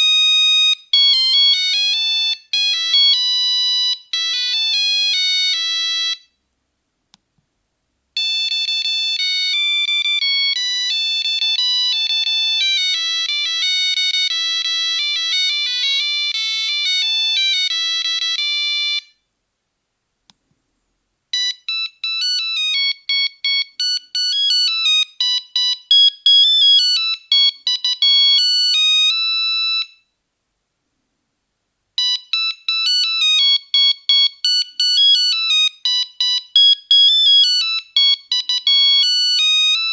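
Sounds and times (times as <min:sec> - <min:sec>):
monophonic phone ringtones: 0:21.4 - 0:29.9, 0:32.0 - 0:39.9.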